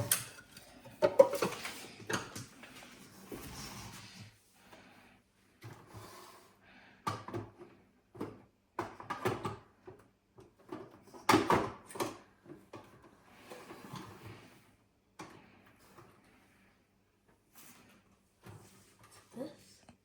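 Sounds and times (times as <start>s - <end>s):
handling knocks clicks and scrapes: 0.0s - 4.1s.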